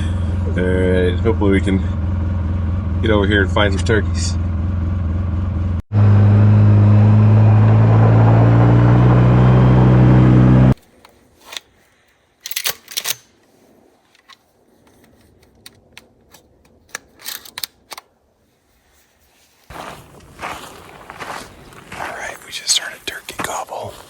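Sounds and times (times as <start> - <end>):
vehicle engine running: 0.0 - 10.8
light clicks and rustles: 10.8 - 18.1.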